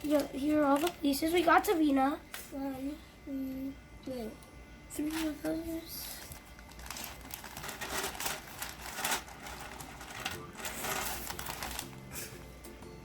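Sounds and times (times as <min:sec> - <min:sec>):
plastic pieces clattering: 0:06.7 - 0:12.0.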